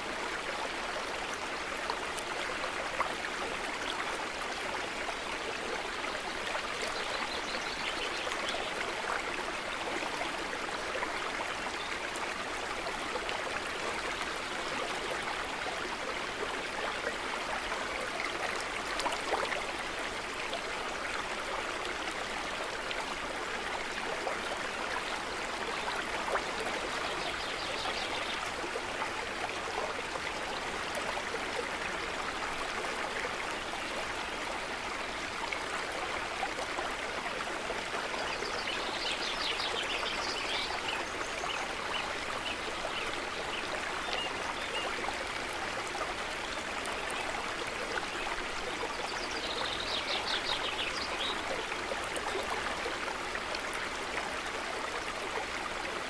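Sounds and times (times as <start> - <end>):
stream water flowing: 0.0 - 56.0.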